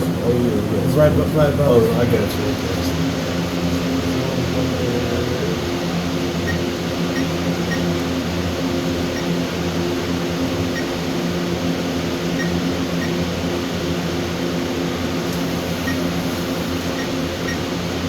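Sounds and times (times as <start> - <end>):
room hum with low drone: 0.0 - 18.0
faint electronic keypad beeps: 6.5 - 7.9, 9.2 - 9.4.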